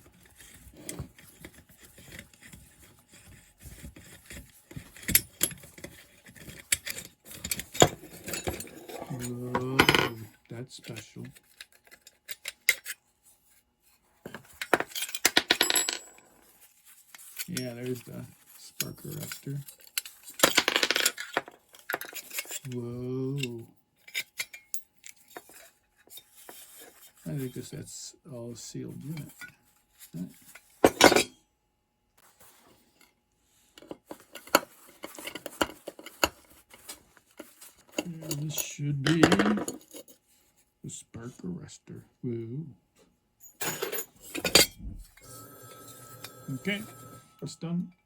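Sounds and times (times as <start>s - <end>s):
metal parts and tools clinking: 4.3s - 10.3s, 14.3s - 27.2s, 34.1s - 40.2s, 43.4s - 47.5s.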